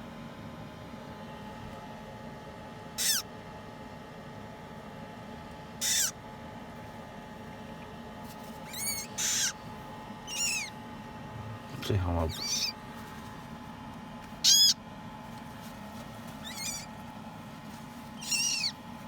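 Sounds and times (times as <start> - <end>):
parrot chick peeping: 3.0 - 3.3, 5.8 - 6.2, 8.6 - 10.8, 12.2 - 12.8, 14.4 - 14.8, 16.4 - 17.0, 18.1 - 18.8.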